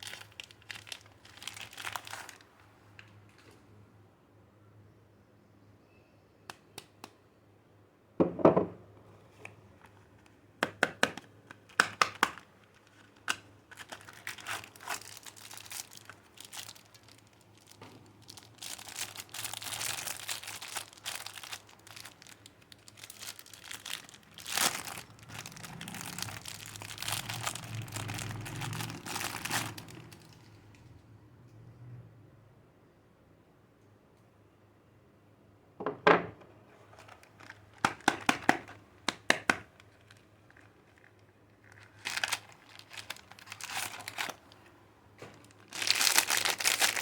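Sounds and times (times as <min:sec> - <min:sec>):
wrapping crinkling and tearing: 0:00.0 - 0:03.6, 0:11.5 - 0:30.7, 0:36.7 - 0:47.0.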